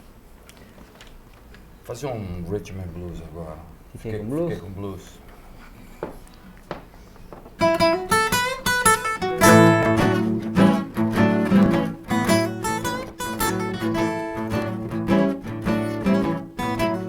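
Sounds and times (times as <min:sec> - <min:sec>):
soft taps on guitar: 0:06.0 - 0:08.5, 0:09.4 - 0:13.2
acoustic guitar playing: 0:07.5 - 0:17.0.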